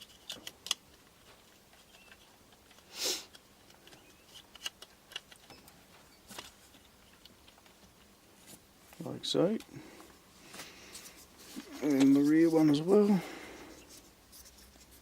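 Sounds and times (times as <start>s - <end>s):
small plastic clicks: 0.0s - 5.6s.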